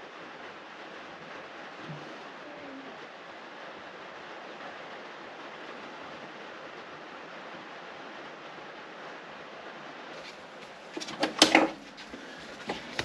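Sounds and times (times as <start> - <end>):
steady background hiss: 0.0 - 13.0.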